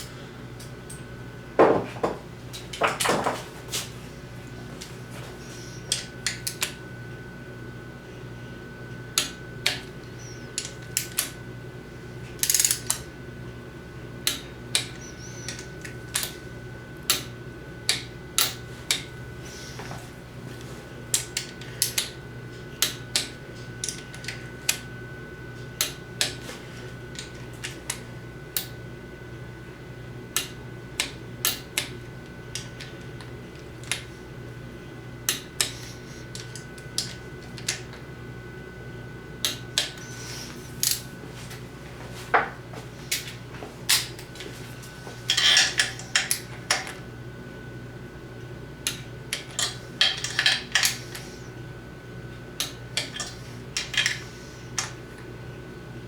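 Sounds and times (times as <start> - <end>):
steady low hum: 0.0 - 56.0
metal tools clinking: 45.3 - 46.8.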